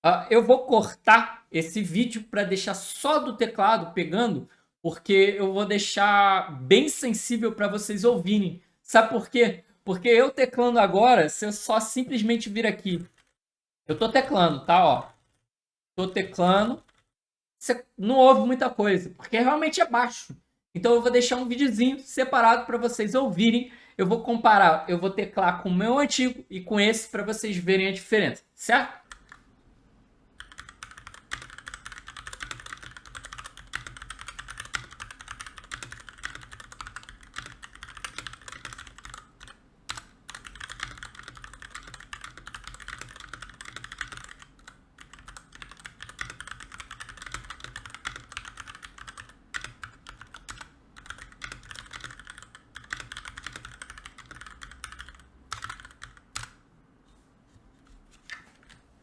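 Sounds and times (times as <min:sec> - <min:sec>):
mechanical keyboard typing: 0:13.0 - 0:13.3, 0:16.6 - 0:17.1, 0:29.1 - 0:29.4, 0:30.4 - 0:56.6.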